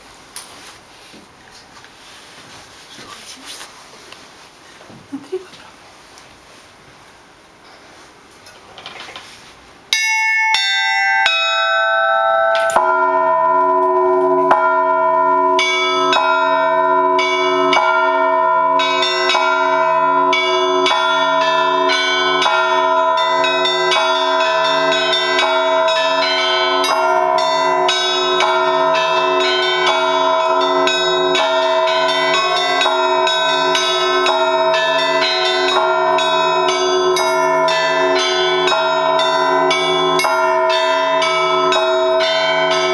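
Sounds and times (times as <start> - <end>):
large low church bells: 9.9 - 42.9
small high church bells: 9.9 - 42.9.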